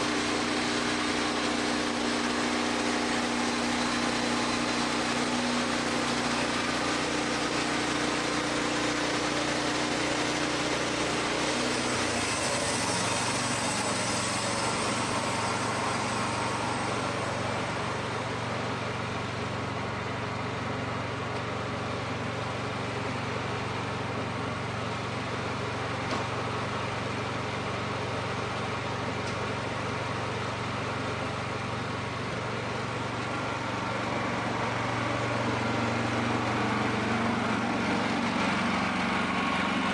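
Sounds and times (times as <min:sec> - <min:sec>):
band sawmill engine humming: 0:00.0 - 0:39.9.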